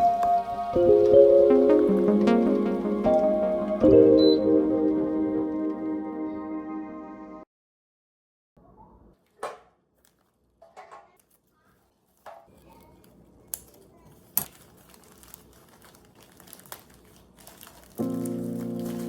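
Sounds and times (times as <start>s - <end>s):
soft rustling: 11.2s - 19.0s.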